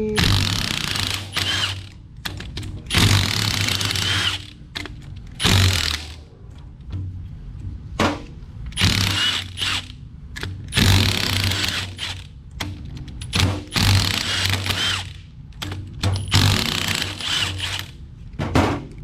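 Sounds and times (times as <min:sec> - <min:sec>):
socket ratchet clicking: 0:00.2 - 0:06.2.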